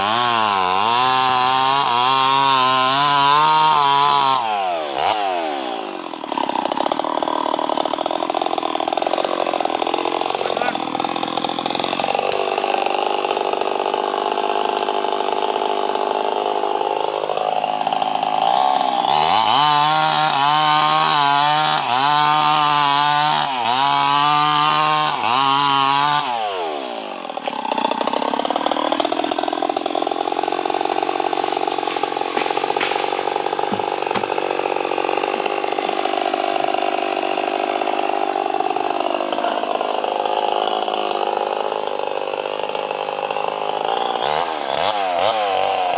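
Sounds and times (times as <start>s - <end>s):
chainsaw cutting wood: 0.0s - 45.9s.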